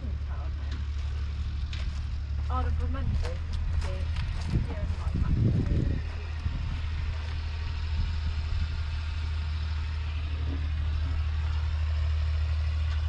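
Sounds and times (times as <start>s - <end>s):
diesel tractor engine idling: 0.0s - 13.0s.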